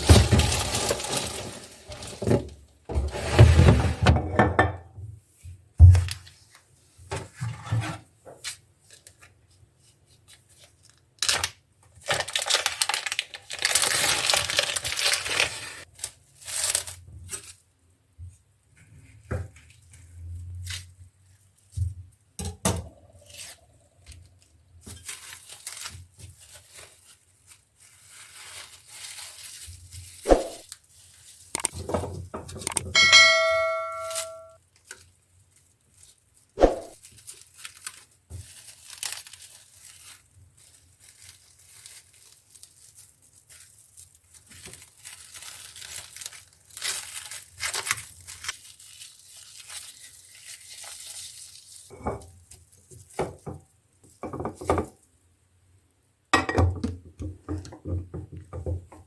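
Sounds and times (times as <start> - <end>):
plastic packaging crinkling: 0.0 - 2.7, 10.1 - 17.7, 23.0 - 33.0, 34.0 - 55.1
items set down knocking: 0.0 - 4.9
ringing clink: 33.0 - 34.6.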